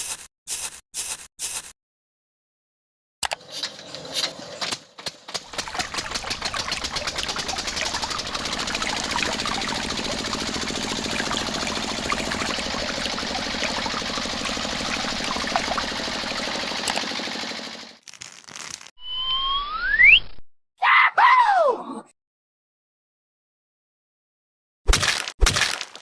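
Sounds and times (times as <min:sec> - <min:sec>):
small motor chugging: 0:05.4 - 0:18.0.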